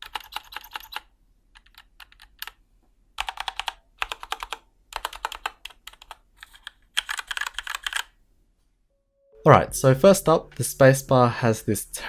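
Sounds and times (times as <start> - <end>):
typing on mechanical keyboard: 0.0 - 2.6, 3.2 - 8.1.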